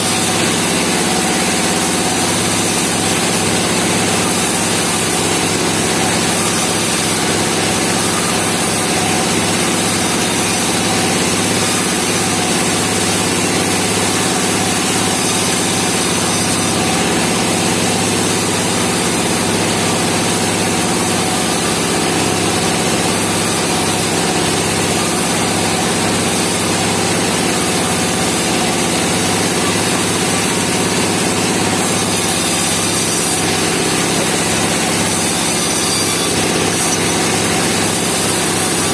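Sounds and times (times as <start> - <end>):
sawmill engine droning: 0.0 - 38.9.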